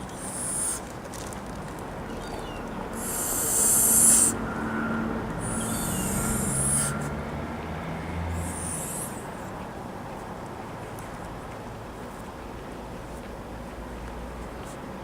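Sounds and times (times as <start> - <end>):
goose hissing: 0.0 - 0.8, 3.0 - 4.5, 5.3 - 7.2, 8.4 - 9.4.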